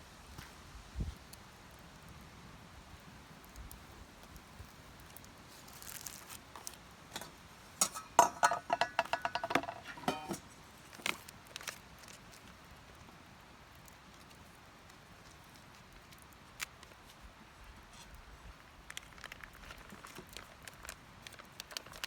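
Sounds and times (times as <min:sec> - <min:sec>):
rustle: 0:00.0 - 0:22.0
utensil tapping metal pot: 0:07.2 - 0:10.6.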